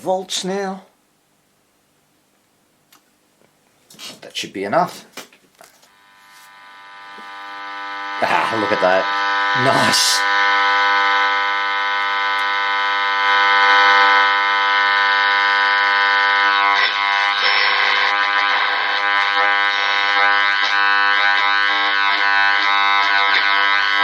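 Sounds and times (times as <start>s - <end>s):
radio buzzing tone: 5.8s - 24.0s
radio tuning whistles: 5.9s - 24.0s.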